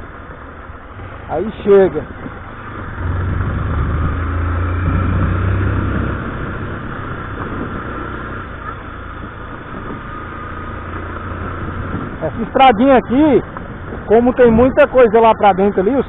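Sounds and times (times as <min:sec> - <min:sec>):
motorcycle engine running: 0:00.0 - 0:16.0
steady rushing noise: 0:00.0 - 0:16.0.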